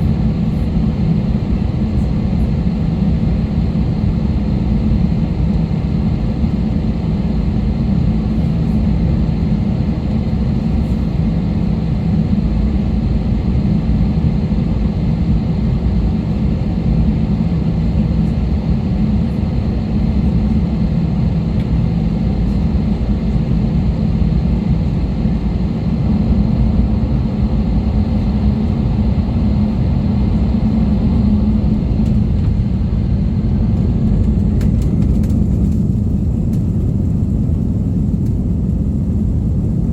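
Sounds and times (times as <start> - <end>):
airliner engines and rushing air: 0.0 - 39.9.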